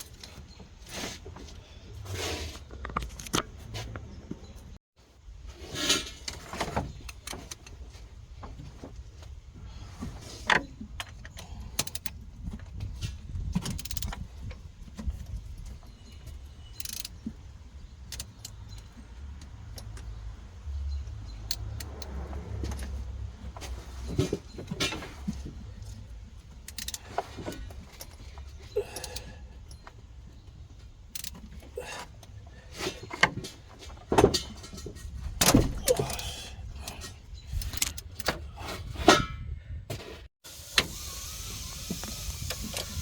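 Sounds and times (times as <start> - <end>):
metallic clicks of hand tools: 10.5 - 12.2, 13.6 - 14.2, 16.7 - 17.2, 18.1 - 20.2, 21.2 - 23.0, 26.6 - 28.2, 28.8 - 30.0, 31.1 - 31.5, 35.4 - 38.4.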